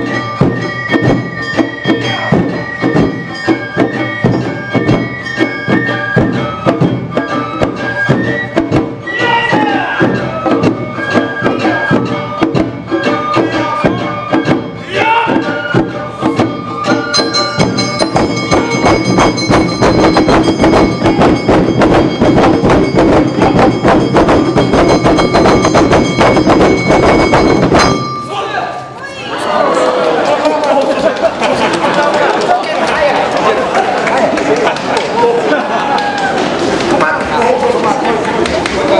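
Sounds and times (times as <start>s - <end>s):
rapid drum and percussion strokes: 0.0s - 28.4s
bamboo flutes high melody: 0.0s - 29.2s.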